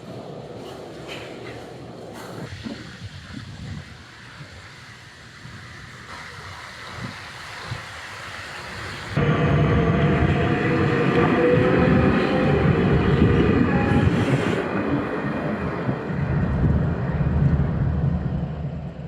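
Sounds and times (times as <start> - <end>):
electric train rumble: 2.4 - 19.0
steady multi-tone whine: 9.1 - 14.7.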